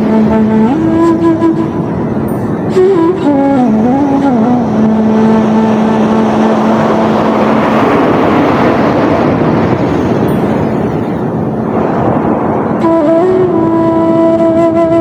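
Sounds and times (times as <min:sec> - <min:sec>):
soft instrumental music: 0:00.0 - 0:07.6, 0:12.7 - 0:15.0
sea waves rushing: 0:00.0 - 0:15.0.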